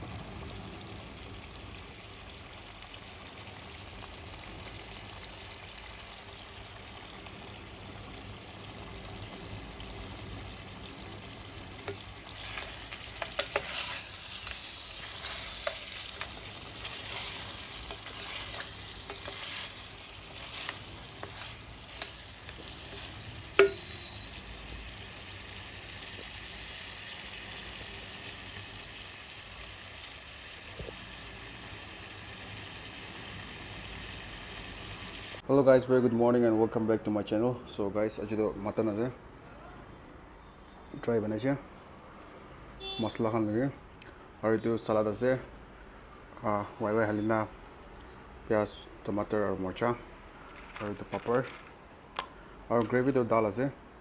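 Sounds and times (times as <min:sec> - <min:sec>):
food sizzling in a pan: 0:00.0 - 0:35.4
utensil stirring and clinking on pan: 0:11.8 - 0:24.0.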